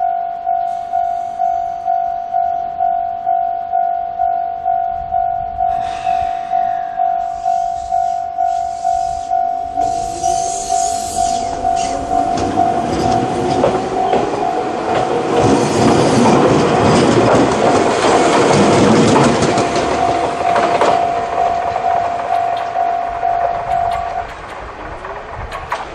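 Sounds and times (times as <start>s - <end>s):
level crossing warning bell: 0.0s - 24.7s
train wheels clattering: 9.8s - 25.9s.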